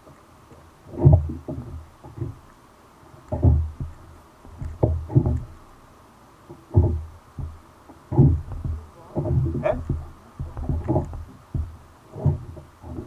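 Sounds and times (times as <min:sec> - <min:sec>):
dull knocks against kayak hull: 0:03.3 - 0:05.7, 0:06.5 - 0:13.0.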